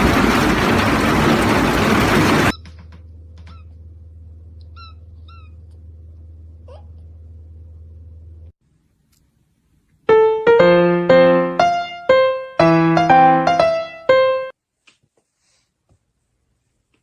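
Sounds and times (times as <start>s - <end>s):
piano chords: 10.1s - 14.6s.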